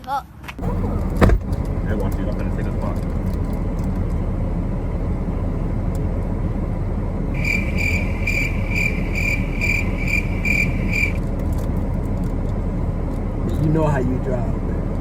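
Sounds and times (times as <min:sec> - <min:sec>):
road and engine rumble: 0:00.0 - 0:15.0
vehicle warning chime beeps: 0:07.4 - 0:11.2.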